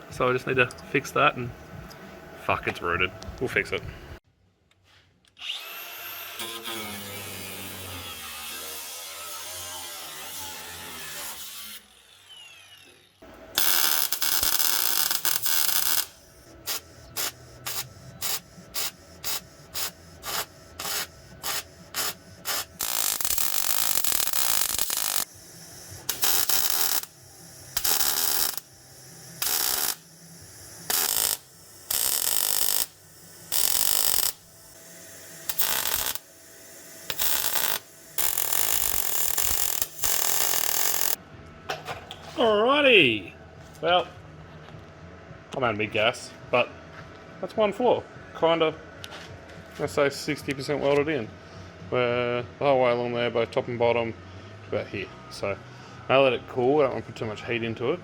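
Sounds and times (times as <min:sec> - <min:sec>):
welding arc crackling: 0:13.5 - 0:41.2.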